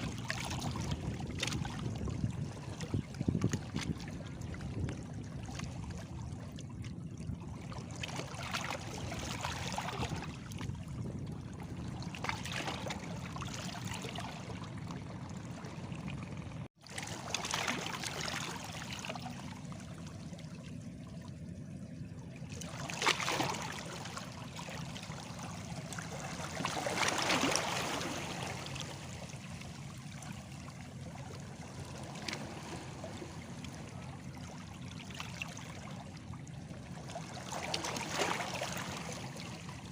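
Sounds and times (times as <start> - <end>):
waves lapping against stones: 0.0 - 6.1, 16.6 - 19.8, 22.5 - 36.2, 36.8 - 39.9.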